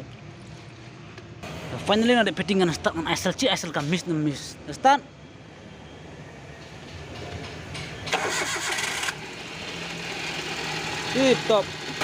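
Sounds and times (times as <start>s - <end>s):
car engine starting and running: 5.9s - 12.0s.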